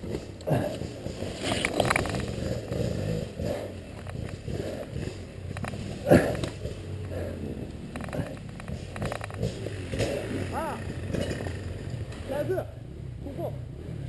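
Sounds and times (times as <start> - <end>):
motorcycle engine running: 0.0 - 14.0.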